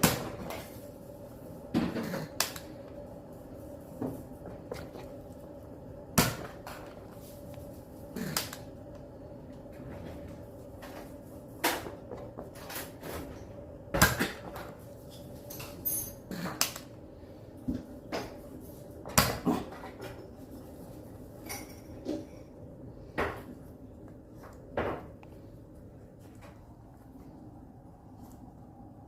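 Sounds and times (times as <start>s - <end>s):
faint steady hum: 0.0s - 29.0s.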